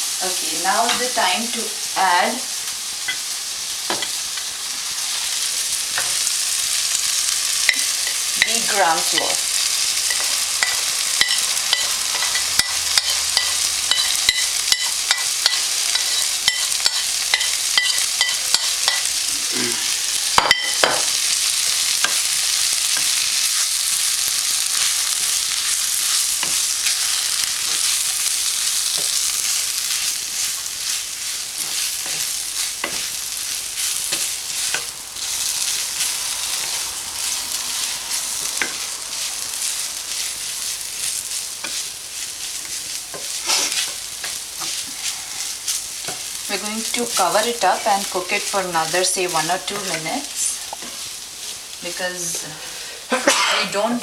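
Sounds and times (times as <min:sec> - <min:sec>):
food sizzling in a pan: 0:00.0 - 0:54.0
spatula scraping a pan: 0:07.4 - 0:19.2, 0:28.8 - 0:48.3.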